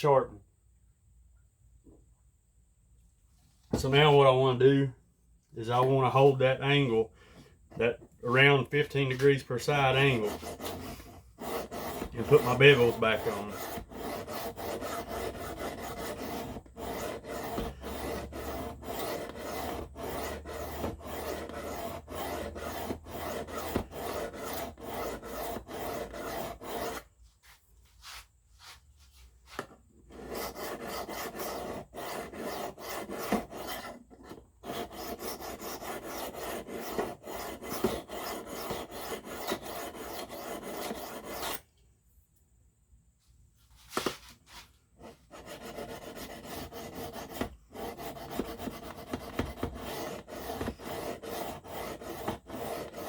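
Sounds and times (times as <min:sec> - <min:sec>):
knife rasping on sharpening stone: 0:10.0 - 0:27.0, 0:34.7 - 0:41.6, 0:45.4 - 0:53.0.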